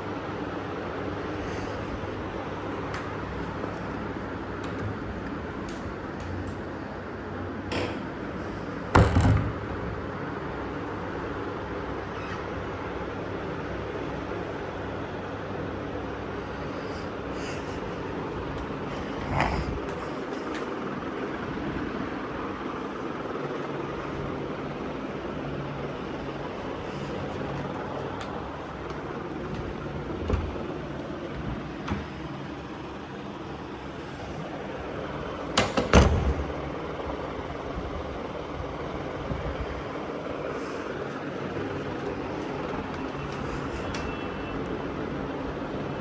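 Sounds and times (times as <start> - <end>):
loud knock and clatter: 9.0 - 9.7
steady rumbling: 16.3 - 33.1.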